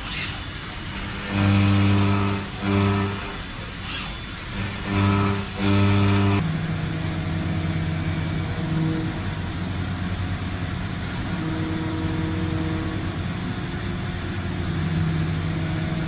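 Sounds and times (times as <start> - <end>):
loud buzzing tone: 0.0 - 10.1, 11.0 - 13.3
machinery humming: 0.0 - 16.0.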